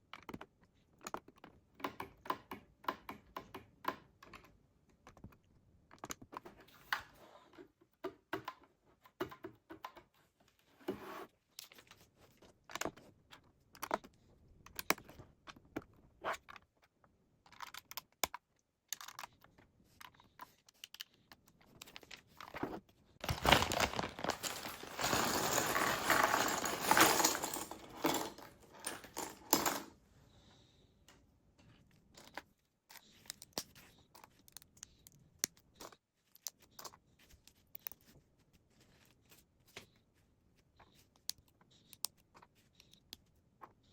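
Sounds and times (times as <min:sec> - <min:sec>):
bricks rattling and rustling: 0:23.2 - 0:29.7.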